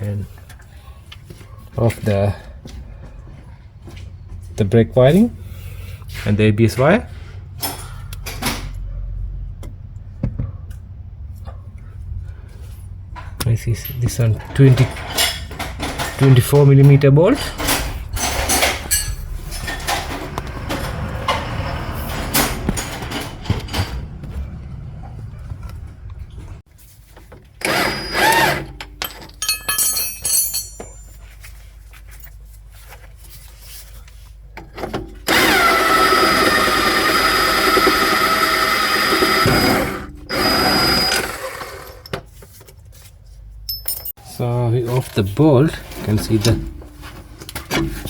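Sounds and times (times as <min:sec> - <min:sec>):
tools and parts clattering: 0:07.5 - 0:08.8, 0:13.2 - 0:24.6, 0:26.8 - 0:36.2, 0:39.2 - 0:48.0
power tool undoing bolt: 0:27.6 - 0:28.9, 0:34.8 - 0:42.1.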